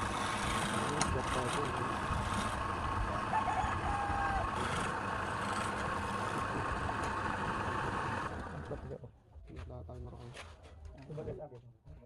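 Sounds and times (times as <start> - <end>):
woodworking machine whining: 0.0 - 8.8.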